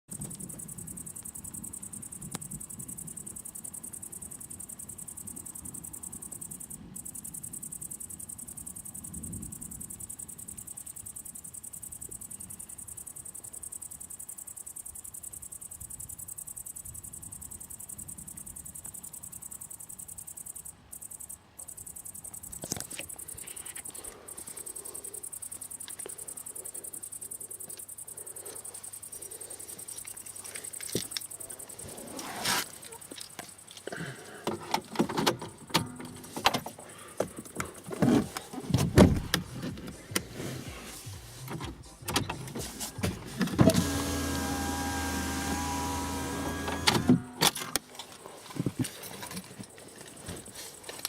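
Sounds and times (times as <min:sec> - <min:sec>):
crickets chirring: 0:00.1 - 0:51.0.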